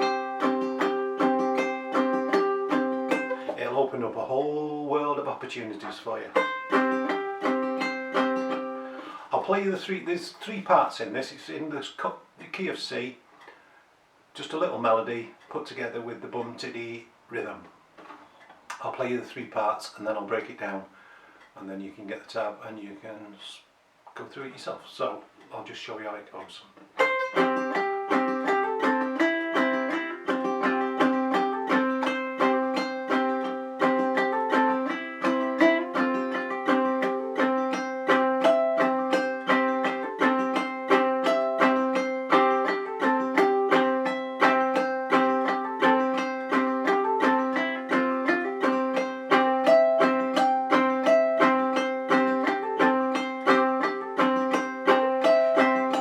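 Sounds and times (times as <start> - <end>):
ukulele strumming and picking: 0.0 - 10.9, 26.8 - 56.0.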